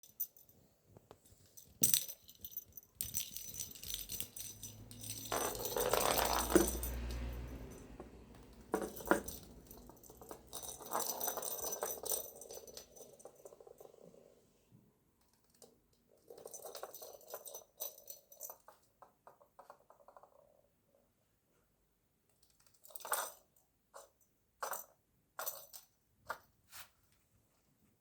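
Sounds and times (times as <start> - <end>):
toy ball rattling and clicking: 1.6 - 7.3.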